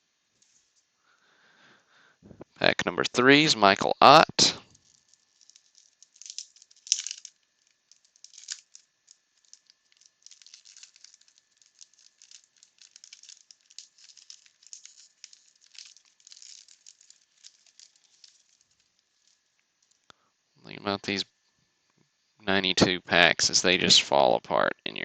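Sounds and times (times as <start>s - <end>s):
wax paper wrapper tearing: 4.6s - 20.0s
light crackle of wrapper handling: 4.6s - 20.1s.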